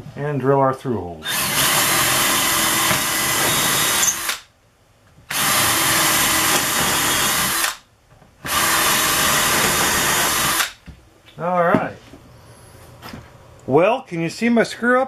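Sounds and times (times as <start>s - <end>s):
power drill boring wood: 1.2s - 4.4s, 5.3s - 7.8s, 8.4s - 10.8s.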